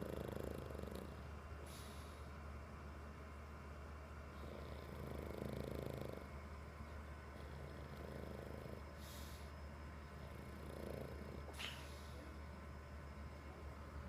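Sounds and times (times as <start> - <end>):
dog snoring: 0.0 - 2.3, 4.3 - 12.4
steady low hum: 0.0 - 14.0.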